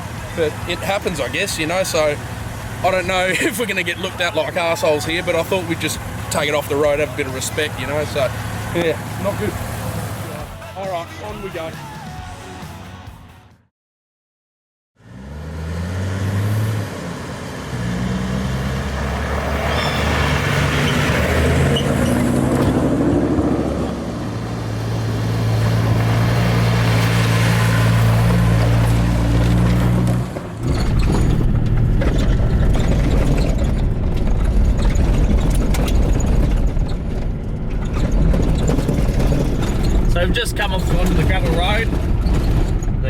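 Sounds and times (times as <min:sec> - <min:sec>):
tyres rumbling on gravel road: 0:00.0 - 0:12.6, 0:15.0 - 0:43.0
vehicle engine accelerating: 0:05.1 - 0:10.4, 0:15.0 - 0:43.0.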